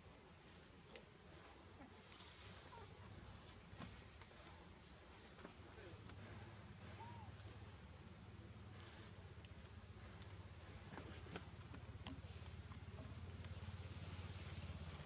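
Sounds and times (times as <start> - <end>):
insect chorus drone: 0.0 - 15.0
faint clicks: 13.3 - 13.7.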